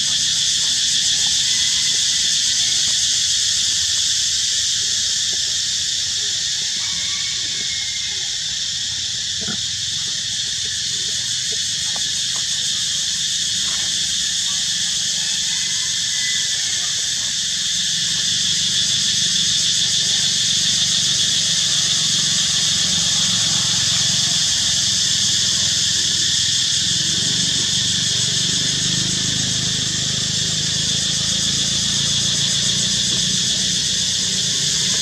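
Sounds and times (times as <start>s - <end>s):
high-pitched insect chorus: 0.0s - 35.0s.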